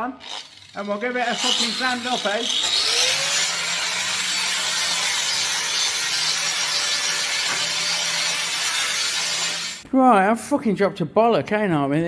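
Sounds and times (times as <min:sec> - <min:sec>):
power grinder grinding metal: 0:00.0 - 0:09.8.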